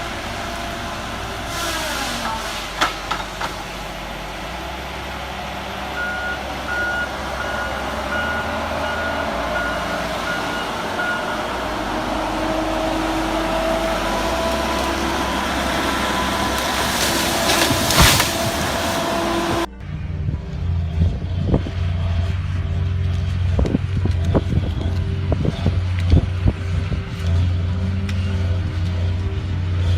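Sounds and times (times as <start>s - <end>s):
heavy machine running: 0.0s - 29.9s
reversing alarm beeping: 5.9s - 12.0s.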